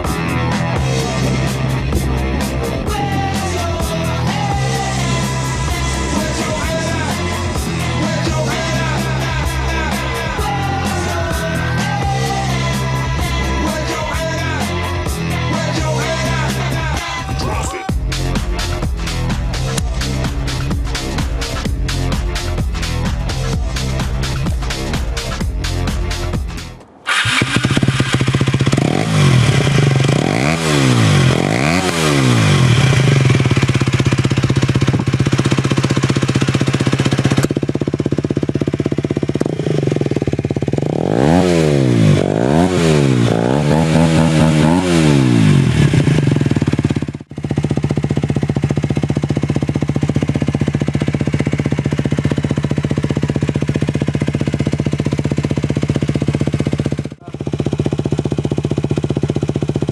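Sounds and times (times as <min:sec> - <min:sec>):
motorcycle engine idling and revving: 0:00.0 - 0:59.9.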